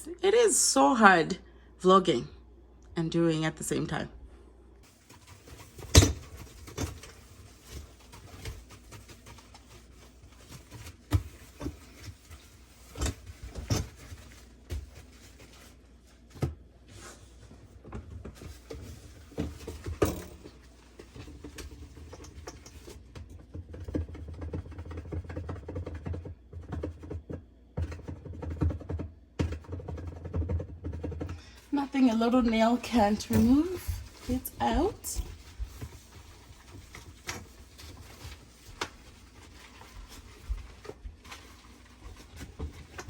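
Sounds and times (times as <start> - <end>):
low steady hum: 30.7 - 43.0.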